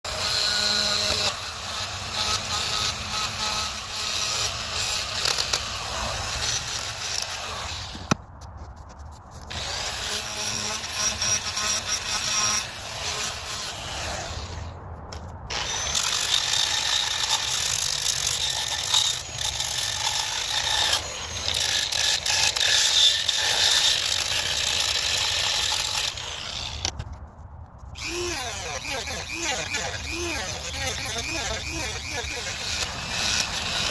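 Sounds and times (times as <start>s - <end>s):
power carving tool grinding wood: 0.1s - 8.2s, 9.5s - 14.7s, 15.5s - 27.0s, 28.0s - 33.9s.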